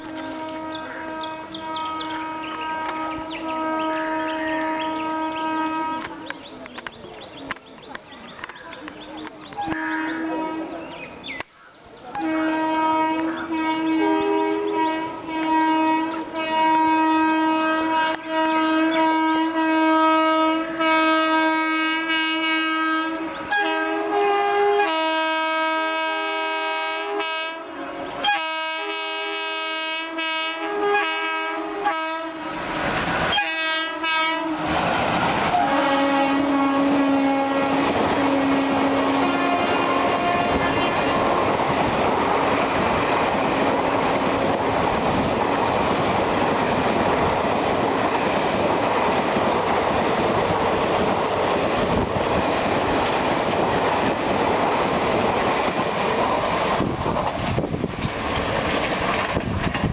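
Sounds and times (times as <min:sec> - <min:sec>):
locomotive horn honking: 0:00.0 - 0:06.4, 0:09.5 - 0:11.0, 0:12.1 - 0:32.7, 0:33.3 - 0:34.8, 0:35.5 - 0:42.0
train rushing past: 0:12.2 - 0:59.9.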